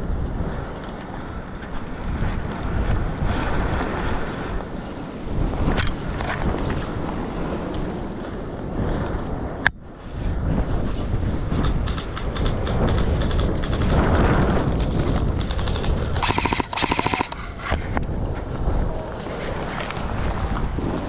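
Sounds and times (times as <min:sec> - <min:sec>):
airsoft guns firing: 0:16.2 - 0:17.7.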